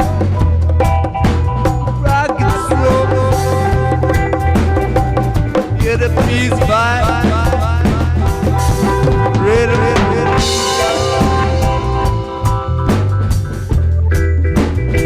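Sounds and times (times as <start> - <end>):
bass guitar: 0.0 - 15.0
drum kit: 0.0 - 15.0
reggae band playing: 0.0 - 15.0
sliding melodic notes: 2.4 - 13.7.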